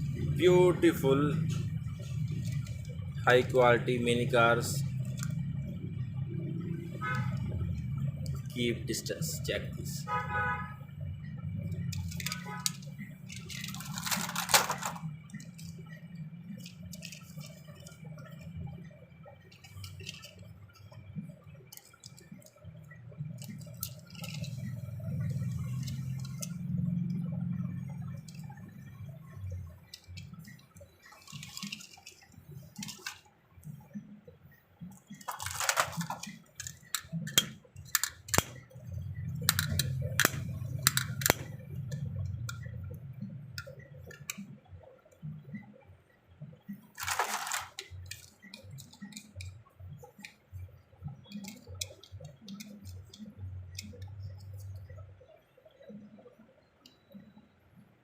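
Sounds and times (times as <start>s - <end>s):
toy vehicles clicking and tapping: 0.0s - 5.7s, 6.3s - 10.0s, 10.6s - 34.1s, 34.8s - 45.7s, 46.6s - 56.2s
packaging rustling: 35.2s - 37.4s, 47.0s - 49.0s.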